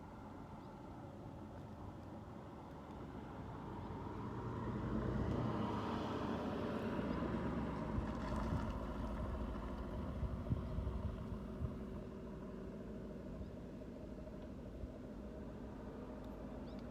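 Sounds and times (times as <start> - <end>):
wind buffeting microphone: 8.1 - 11.9.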